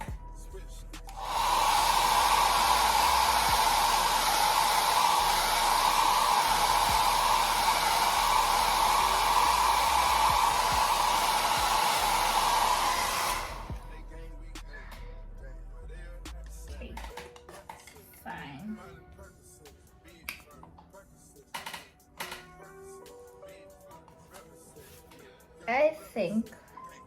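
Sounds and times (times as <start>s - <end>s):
hair dryer blowing: 1.1s - 13.8s.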